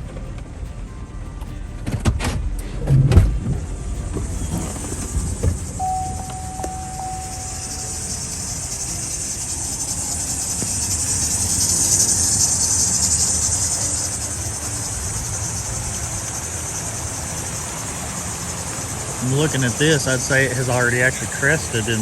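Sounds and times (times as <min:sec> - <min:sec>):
low rumble: 0:02.8 - 0:17.0
flooded creek rushing: 0:03.6 - 0:22.0.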